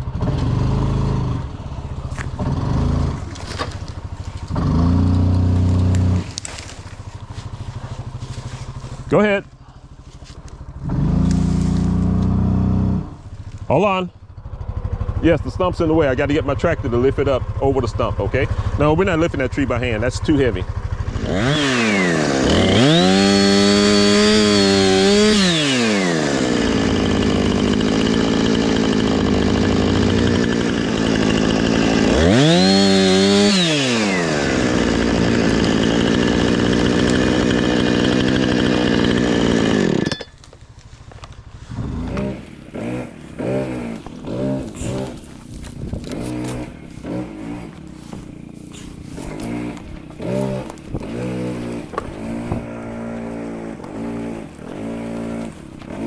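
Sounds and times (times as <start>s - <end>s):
engine revving in surges: 0.0s - 9.1s, 10.7s - 13.3s, 21.0s - 40.1s, 41.5s - 56.0s
chainsaw revving: 0.0s - 9.8s, 10.5s - 13.6s, 18.2s - 40.5s, 41.1s - 56.0s.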